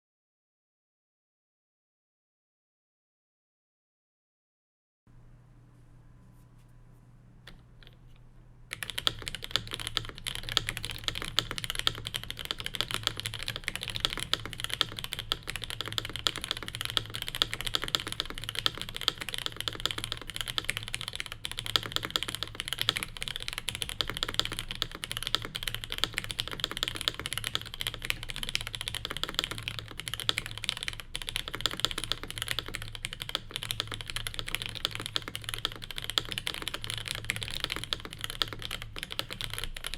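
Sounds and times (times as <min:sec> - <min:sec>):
fast typing on mechanical keyboard: 0:08.7 - 0:39.9.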